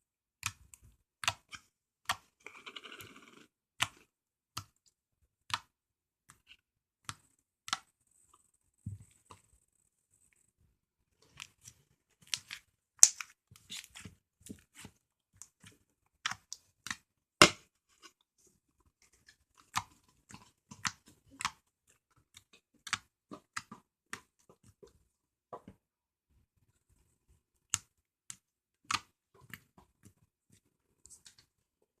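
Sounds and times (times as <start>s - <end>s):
slime squishing and popping: 12.2s - 14.0s.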